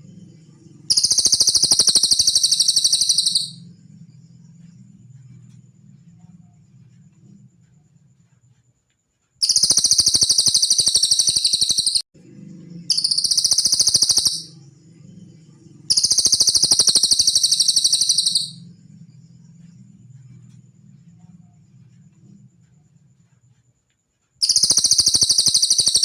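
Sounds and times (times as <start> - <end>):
faint low hum: 0.0 - 26.0
songbird high-pitched trills: 0.4 - 3.8, 9.4 - 12.0, 12.9 - 14.6, 15.4 - 18.8, 24.4 - 26.0.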